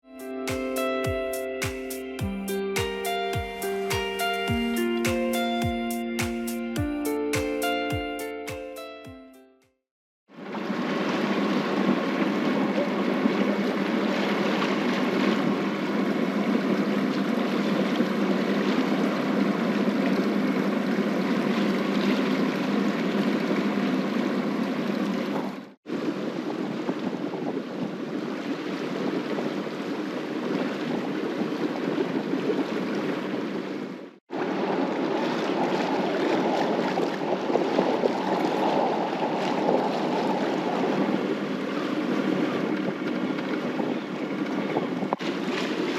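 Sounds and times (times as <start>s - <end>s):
water rushing: 10.3s - 45.9s
wind: 10.3s - 45.9s.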